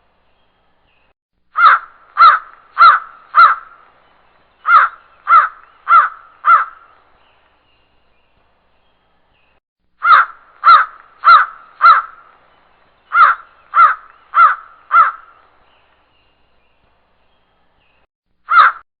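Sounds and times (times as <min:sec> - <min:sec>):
crow cawing: 0:01.6 - 0:03.8, 0:04.6 - 0:07.0, 0:10.0 - 0:12.3, 0:13.1 - 0:15.4, 0:18.5 - 0:18.8.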